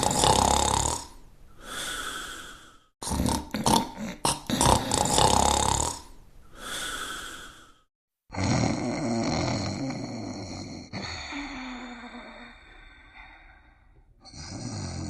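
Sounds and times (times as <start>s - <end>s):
rattling cartoon snore: 0.0s - 1.2s, 3.0s - 6.1s, 8.3s - 12.8s, 14.2s - 15.0s
steady droning snore: 0.0s - 15.0s.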